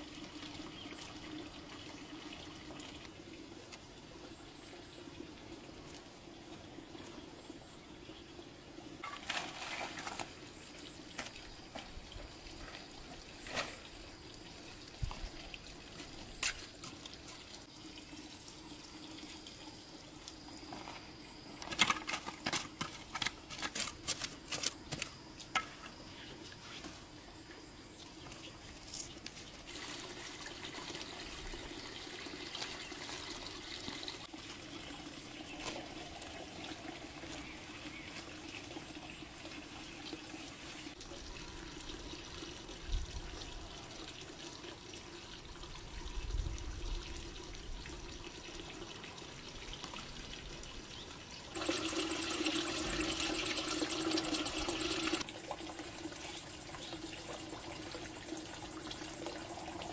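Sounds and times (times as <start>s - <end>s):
water running from a tap: 29.7s - 37.3s, 41.0s - 59.9s
faint steady hum: 50.4s - 59.9s.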